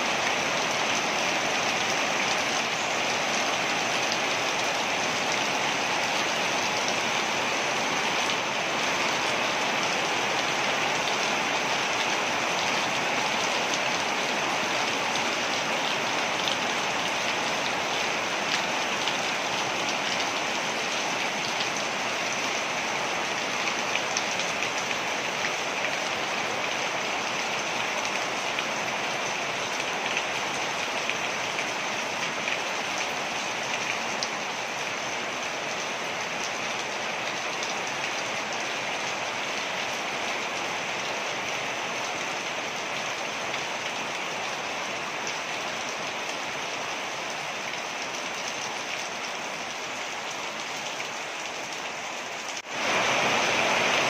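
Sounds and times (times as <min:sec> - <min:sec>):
waterfall rushing: 0:50.9 - 0:54.0.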